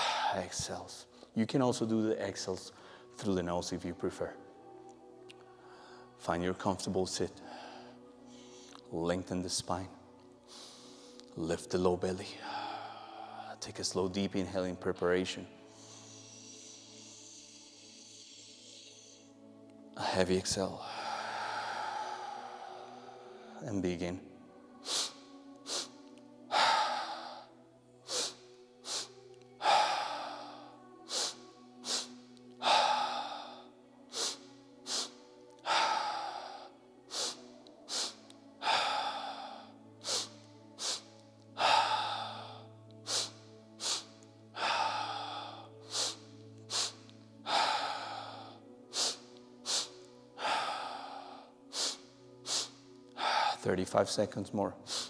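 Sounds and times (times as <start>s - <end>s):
sharp nasal inhales: 24.8s - 27.4s, 28.0s - 53.6s
long heavy exhale: 24.8s - 53.6s.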